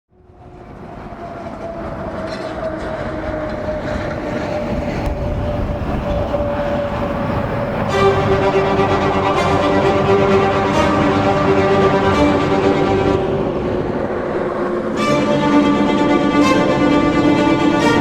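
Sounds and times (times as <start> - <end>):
steady rumbling: 3.5 - 18.0
held tone sinking in pitch: 6.0 - 18.0
bowed string music: 7.2 - 18.0.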